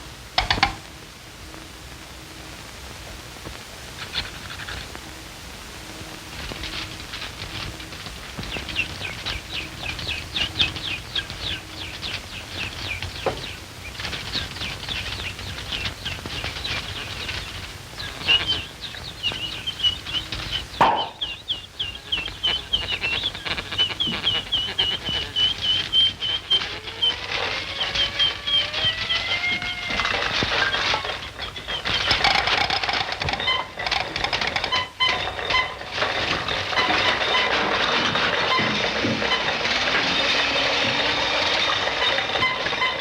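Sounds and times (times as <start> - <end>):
rapid high-pitched cartoon chirping: 8.4 - 30.7.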